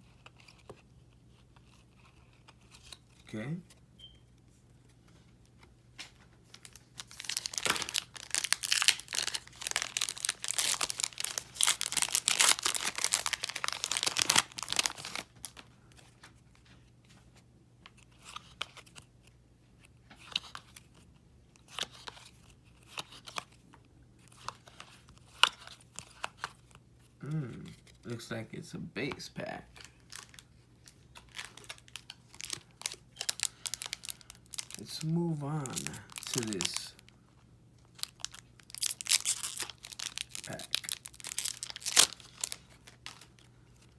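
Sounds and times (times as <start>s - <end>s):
cards rustling and clicking: 0.0s - 3.8s, 4.8s - 16.7s, 17.9s - 19.1s, 19.8s - 26.8s, 29.1s - 37.1s, 37.8s - 43.9s
plastic wrapper tearing and crinkling: 6.5s - 15.7s, 29.7s - 37.1s, 37.8s - 43.9s.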